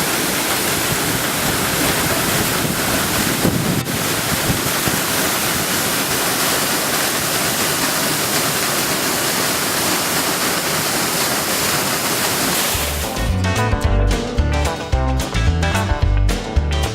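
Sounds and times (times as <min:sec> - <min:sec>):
waterfall rushing: 0:00.0 - 0:13.3.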